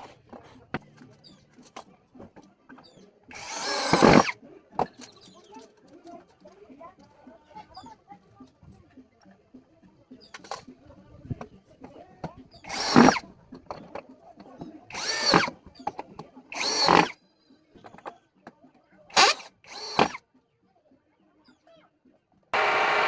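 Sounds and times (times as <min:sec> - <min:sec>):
power drill bursts: 0:03.3 - 0:04.3, 0:12.7 - 0:13.2, 0:14.9 - 0:15.5, 0:16.5 - 0:17.2, 0:19.1 - 0:20.2, 0:22.6 - 0:23.0.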